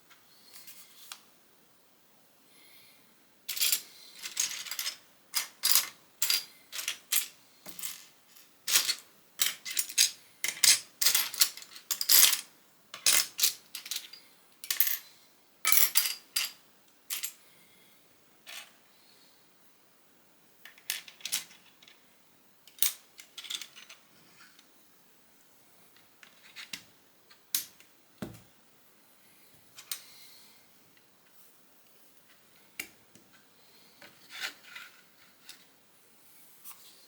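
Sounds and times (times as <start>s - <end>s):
plastic pieces clicking and clattering: 8.7s - 14.8s, 22.7s - 24.0s.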